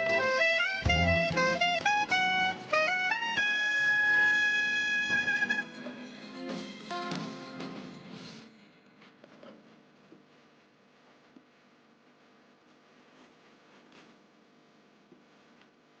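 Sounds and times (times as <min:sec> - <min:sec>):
background music melody: 0:00.0 - 0:04.3.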